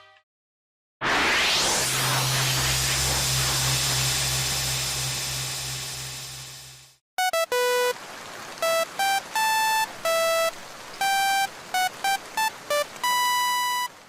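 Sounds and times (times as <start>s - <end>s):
hissing sound effect: 1.0s - 7.0s
short electronic beeps: 8.6s - 13.9s.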